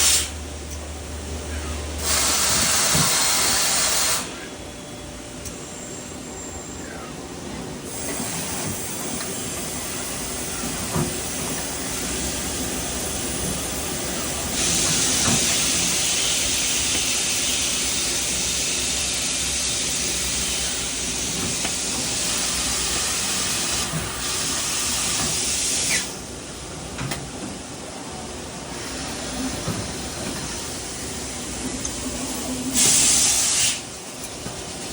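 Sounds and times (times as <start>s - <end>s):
coolant spraying hiss: 0.0s - 0.4s, 2.0s - 4.3s, 32.7s - 33.9s.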